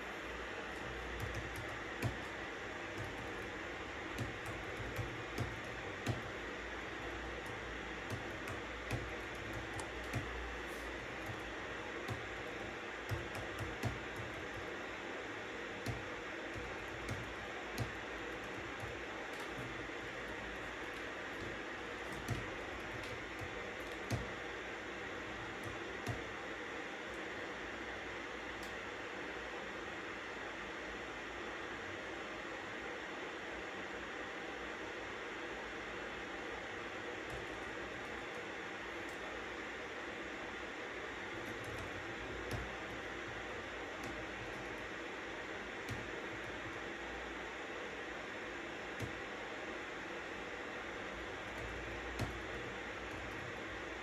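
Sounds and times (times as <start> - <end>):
keyboard keystrokes clicking: 0.0 - 15.0, 15.7 - 26.5, 37.2 - 39.7, 41.2 - 47.0, 48.9 - 49.3, 51.1 - 54.0.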